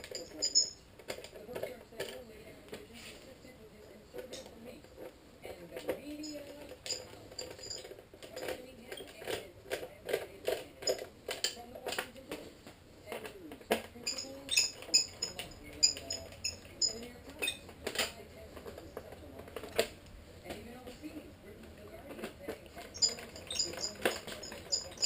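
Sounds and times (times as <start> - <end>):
bright ringing clinks: 0.0 - 0.8, 6.2 - 7.9, 14.0 - 17.6, 22.9 - 25.0
hand tools and screws clinking: 0.0 - 1.4, 5.8 - 9.4, 13.8 - 18.2, 22.6 - 25.0.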